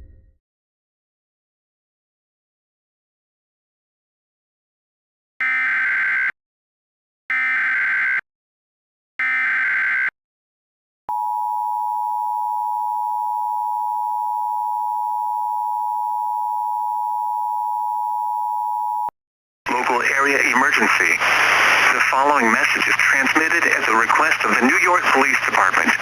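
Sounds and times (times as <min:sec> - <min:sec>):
buzzy digital data bursts: 0:19.7 - 0:26.0.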